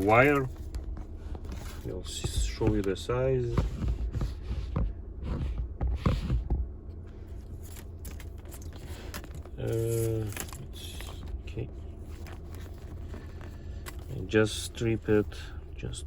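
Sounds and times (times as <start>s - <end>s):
low steady rumble: 0.0s - 16.0s
bumps of handled parts: 7.6s - 11.5s.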